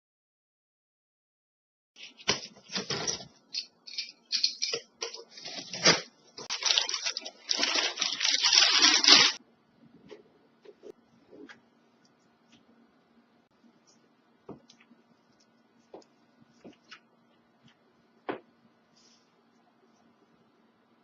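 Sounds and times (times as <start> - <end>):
packaging crinkling and tearing: 5.4 - 9.4.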